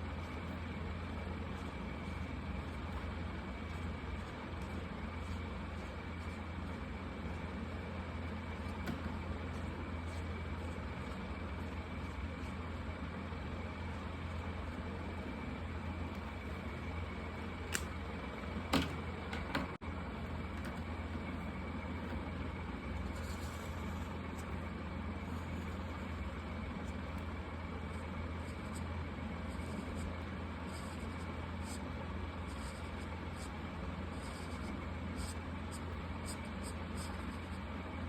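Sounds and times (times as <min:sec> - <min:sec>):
marker scratching on paper: 0:00.1 - 0:15.2, 0:23.0 - 0:24.6, 0:27.9 - 0:37.6.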